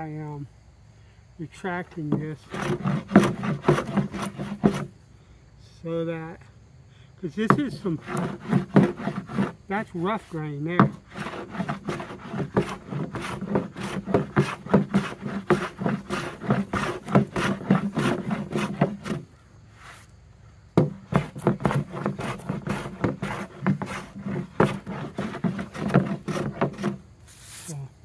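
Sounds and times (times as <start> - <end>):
hand plane strokes on wood: 2.0 - 4.9, 7.4 - 20.0, 20.8 - 27.0.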